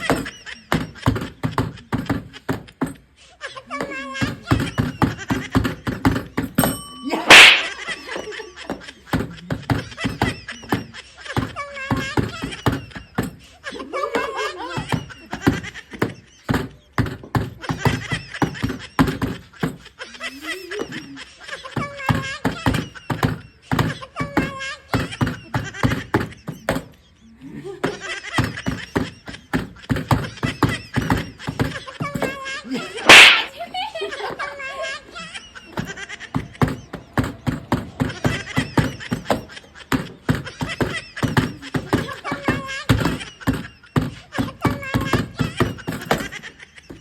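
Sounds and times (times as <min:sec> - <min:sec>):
people laughing: 0:00.0 - 0:06.4, 0:07.0 - 0:47.0
small bell ringing: 0:06.4 - 0:08.6
high-pitched voices shouting: 0:07.0 - 0:07.9, 0:32.2 - 0:33.6
loud sharp slap: 0:07.2 - 0:07.8, 0:33.0 - 0:33.6
sharp knocks and smacks: 0:07.3 - 0:07.9, 0:33.0 - 0:33.6.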